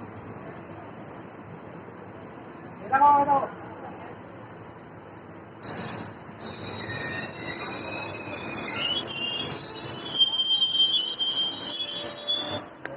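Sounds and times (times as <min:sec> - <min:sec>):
short hiss: 0:05.6 - 0:06.4
train wheels squealing on rails: 0:05.6 - 0:12.8.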